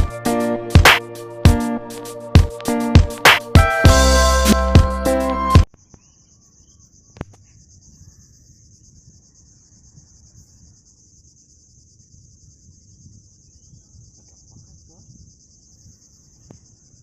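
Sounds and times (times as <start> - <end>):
sharp knock: 0.8 - 1.0, 2.4 - 4.9
high-pitched insect trill: 5.8 - 17.0.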